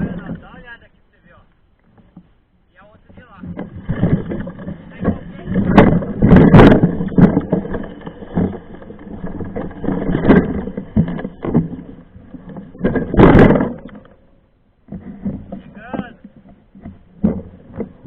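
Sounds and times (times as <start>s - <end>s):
bike knocks and rattles: 1.8s - 14.2s
wind gusts on microphone: 2.8s - 13.9s.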